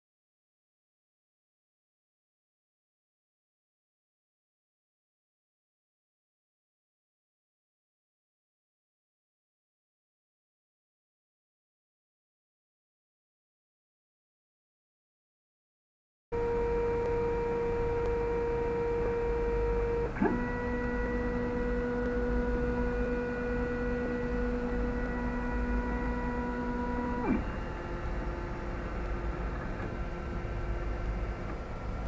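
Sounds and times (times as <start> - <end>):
low hum: 16.4 - 32.0
stepper motors whining: 16.4 - 32.0.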